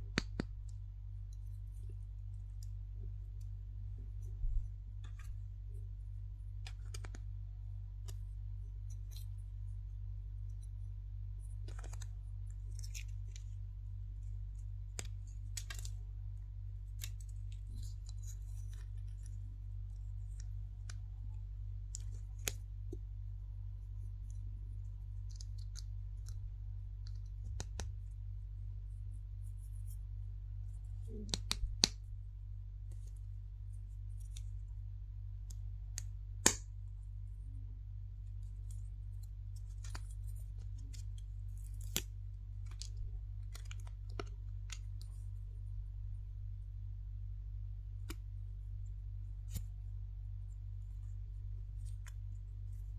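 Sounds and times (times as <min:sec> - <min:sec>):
low electrical hum: 0:00.0 - 0:52.9
plastic capsule clicks and crinkles: 0:06.6 - 0:07.3, 0:11.6 - 0:13.6, 0:14.9 - 0:16.0, 0:25.2 - 0:26.4, 0:38.6 - 0:45.2.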